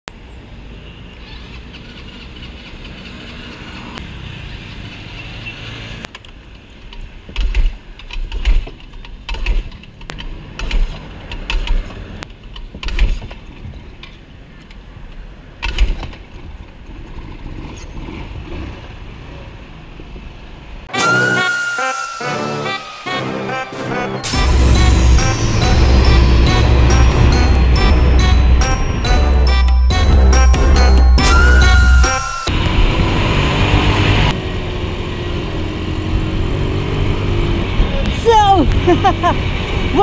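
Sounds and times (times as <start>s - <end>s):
engine heavy bursts: 20.9s - 35.4s.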